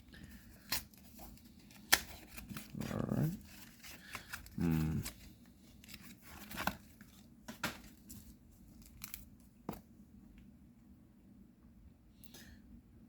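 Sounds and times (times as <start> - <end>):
card pack wrapper tearing: 0.6 - 7.2.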